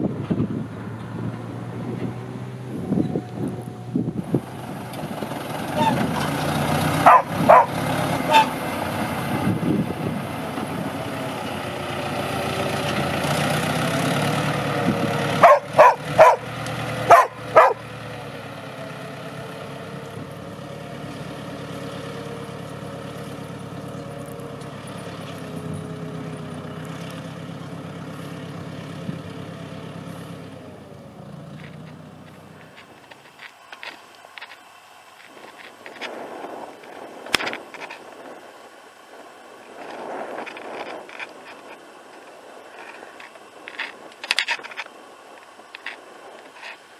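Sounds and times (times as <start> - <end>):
tractor diesel engine running: 0.0 - 46.9
dog barking: 7.0 - 8.5, 15.4 - 16.4, 17.1 - 17.8.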